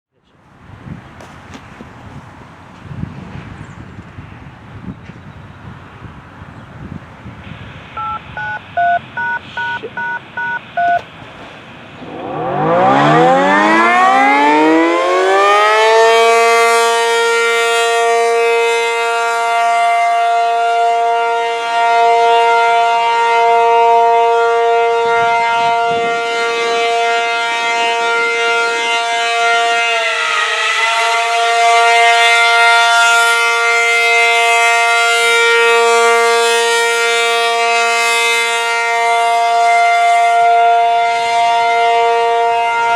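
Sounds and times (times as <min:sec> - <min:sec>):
warning siren: 0:06.8 - 0:11.1, 0:11.7 - 0:42.9
touch-tone beeps: 0:08.0 - 0:11.0.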